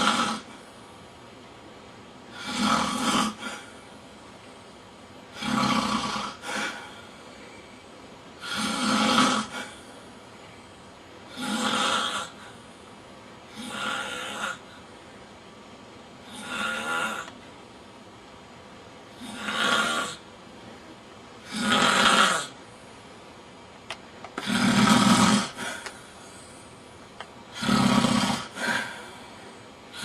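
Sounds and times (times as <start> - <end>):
man snoring: 0.0 - 0.7, 2.3 - 3.8, 5.3 - 7.2, 8.4 - 10.0, 11.3 - 12.6, 13.5 - 14.8, 16.2 - 17.4, 19.1 - 20.2, 21.4 - 22.6, 24.4 - 26.0, 27.5 - 29.2.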